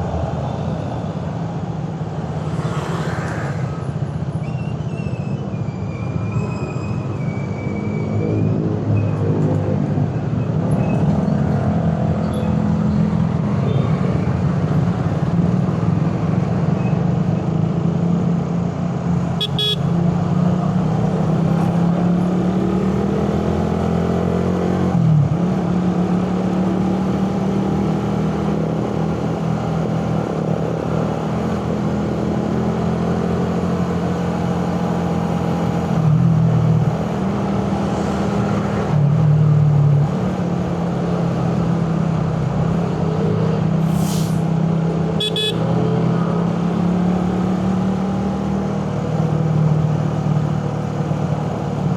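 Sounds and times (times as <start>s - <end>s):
vehicle horns: 19.4s - 20.1s, 45.2s - 45.8s
motorcycle engine revving: 45.2s - 46.2s.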